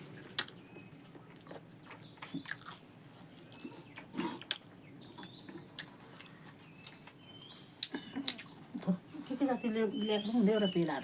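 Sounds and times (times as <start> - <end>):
person chewing and smacking: 0.2 - 7.2, 7.8 - 8.8.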